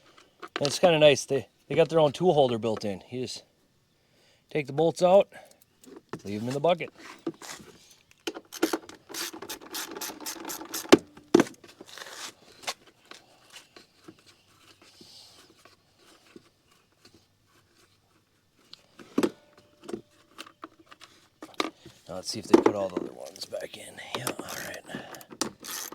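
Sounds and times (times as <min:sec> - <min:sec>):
faint ticks and scrapes: 0:00.0 - 0:01.0, 0:05.4 - 0:10.8, 0:11.6 - 0:25.9
socket ratchet clicking: 0:08.5 - 0:11.0, 0:25.4 - 0:25.9.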